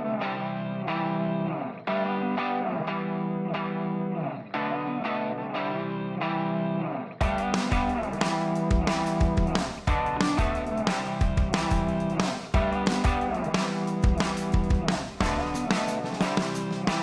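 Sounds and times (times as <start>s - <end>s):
bass: 7.2s - 17.0s
drum beat: 7.2s - 17.0s.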